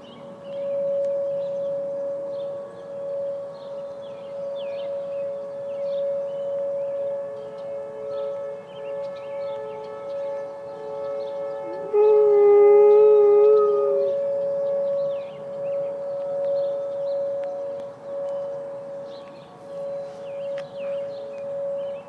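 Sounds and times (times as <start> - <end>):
civil defense siren: 0.0 - 22.0
dog howling: 11.6 - 15.1.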